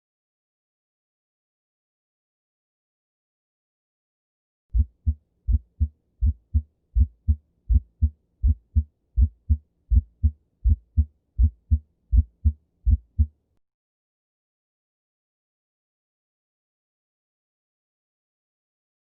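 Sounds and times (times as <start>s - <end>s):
heartbeat thuds: 4.7s - 13.3s.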